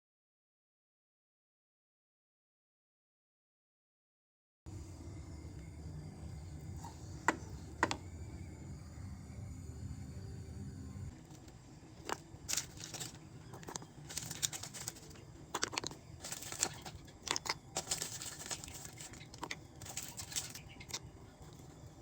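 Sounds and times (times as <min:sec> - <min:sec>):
faint steady hum: 0:04.7 - 0:22.0
crinkling rustles: 0:11.2 - 0:21.8.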